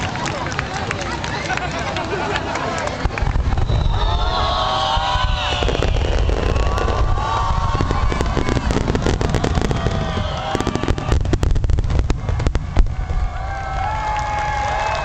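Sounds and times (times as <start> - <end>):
fireworks crackling pops: 2.8 - 15.0
fireworks sharp bang: 3.0 - 13.4.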